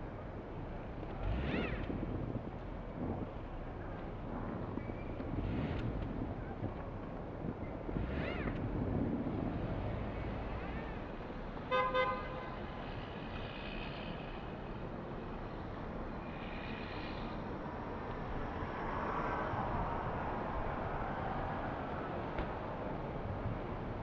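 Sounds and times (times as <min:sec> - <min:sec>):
city traffic rumbling: 0:00.0 - 0:24.0.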